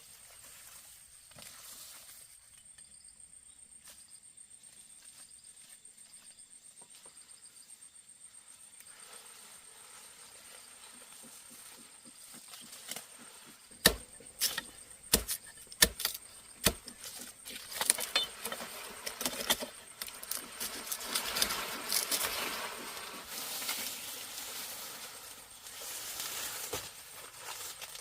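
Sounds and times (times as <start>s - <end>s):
cane stalks crackling and rustling: 8.4s - 28.0s
sugarcane chopped by hand: 11.3s - 22.5s.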